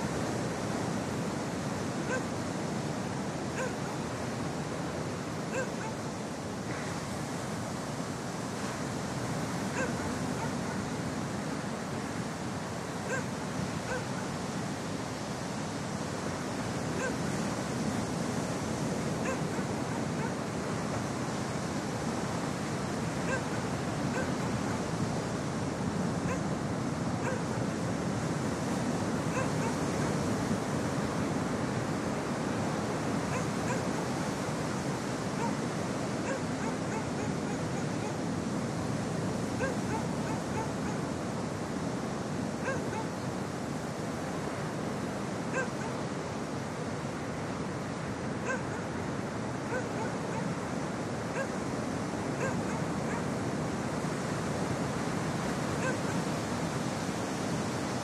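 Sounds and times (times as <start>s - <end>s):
ocean surf on shore: 0.0s - 58.0s
faint dog barks: 2.0s - 2.4s, 3.5s - 4.1s, 5.5s - 6.1s, 9.7s - 11.0s, 13.0s - 14.4s, 16.9s - 17.5s, 19.2s - 20.5s, 23.2s - 24.9s, 26.2s - 26.5s, 27.2s - 27.7s, 29.3s - 30.3s, 33.2s - 38.2s, 39.6s - 41.1s, 42.6s - 43.2s, 45.5s - 46.0s, 48.4s - 48.9s, 49.6s - 50.6s, 51.3s - 51.6s, 52.3s - 53.4s, 55.7s - 56.3s.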